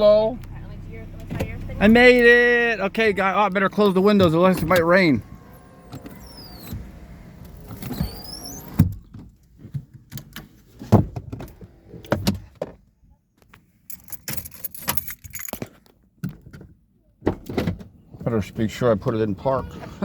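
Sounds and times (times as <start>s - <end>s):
power window motor whine: 1.1s - 8.9s
clicks and knocks inside car: 4.0s - 12.9s, 15.4s - 19.3s.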